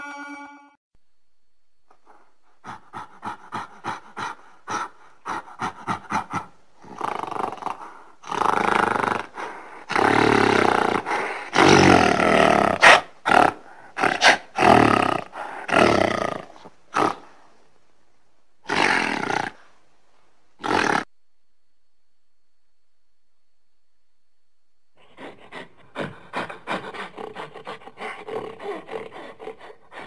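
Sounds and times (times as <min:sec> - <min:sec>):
gorilla hooting and roaring: 0:02.7 - 0:17.3, 0:25.0 - 0:30.0.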